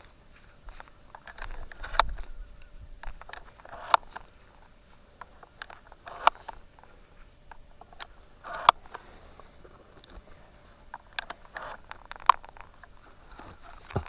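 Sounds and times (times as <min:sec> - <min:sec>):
rustling: 0:00.0 - 0:14.0
sharp clicks: 0:00.8 - 0:06.9, 0:07.5 - 0:09.1.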